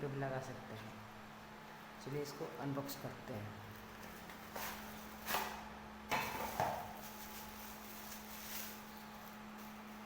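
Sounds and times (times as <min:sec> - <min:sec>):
packaging rustling and knocking: 0:06.1 - 0:09.0.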